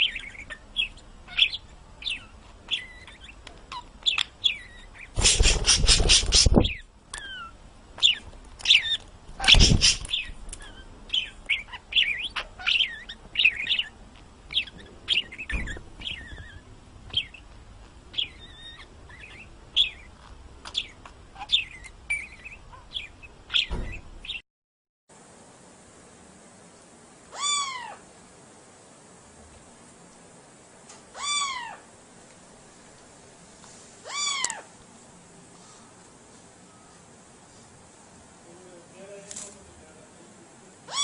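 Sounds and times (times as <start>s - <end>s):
small bird chirping: 0.0s - 24.4s
loud rustling burst: 5.1s - 6.8s, 9.4s - 10.2s.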